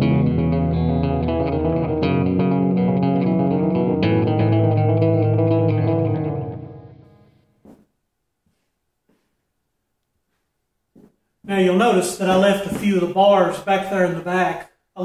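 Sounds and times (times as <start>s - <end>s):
rock music with electric guitar: 0.0s - 7.4s.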